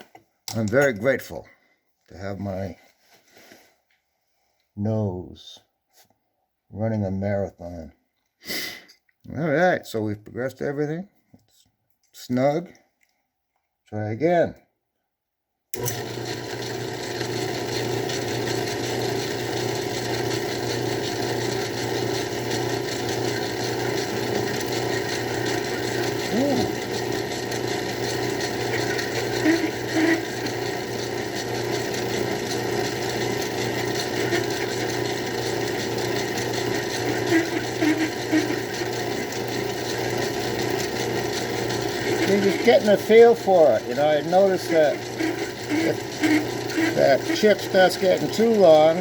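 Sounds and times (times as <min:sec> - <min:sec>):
lathe drilling aluminium: 0:15.8 - 0:49.0.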